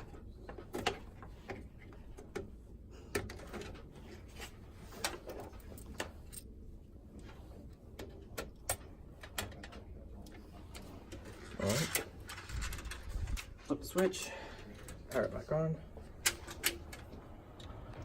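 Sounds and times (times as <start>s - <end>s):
cables and plugs clicking: 7.1s - 13.6s, 16.0s - 18.0s.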